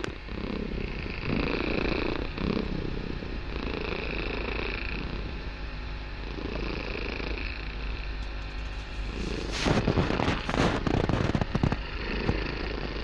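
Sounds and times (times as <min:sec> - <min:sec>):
kitten purring: 0:00.0 - 0:13.0.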